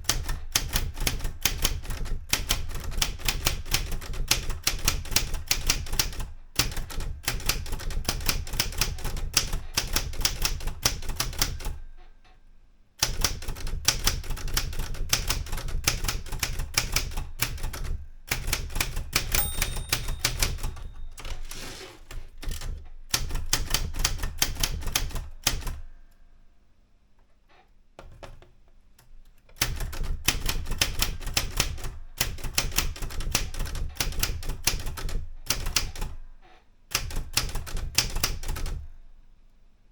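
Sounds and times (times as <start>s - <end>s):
manual typewriter typing: 0.0s - 11.8s, 13.0s - 25.8s, 29.0s - 36.2s, 36.9s - 38.9s
typewriter margin bell: 18.7s - 22.6s.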